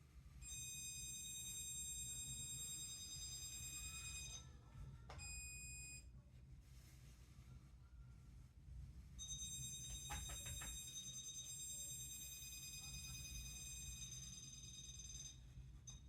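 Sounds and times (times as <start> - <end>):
stud finder high-pitched tone: 0.4 - 4.5.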